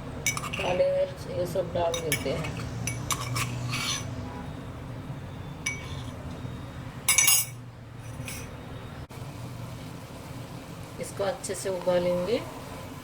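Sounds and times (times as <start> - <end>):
low steady hum: 0.0 - 13.0
utensils clinking against cookware: 0.2 - 0.9, 1.8 - 4.1, 5.6 - 6.2, 7.1 - 8.6.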